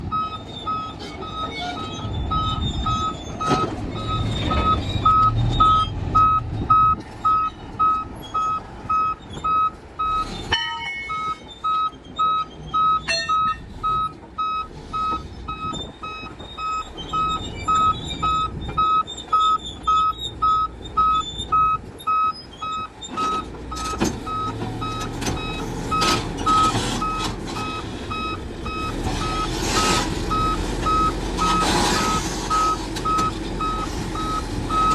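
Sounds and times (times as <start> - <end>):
diesel engine rumble: 0.0 - 34.9
backup alarm beeping: 11.1 - 34.9.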